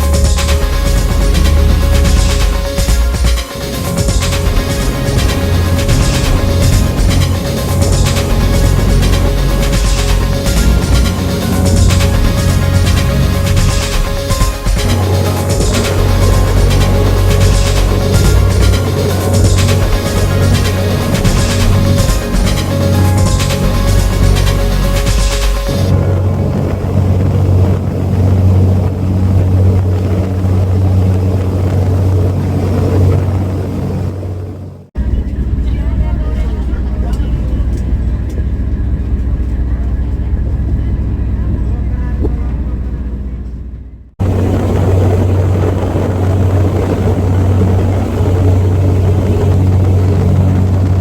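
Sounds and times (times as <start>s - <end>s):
music track: 0.0s - 30.2s
loud rushing water: 0.0s - 34.9s, 44.2s - 51.0s
ferry engines droning: 0.0s - 51.0s.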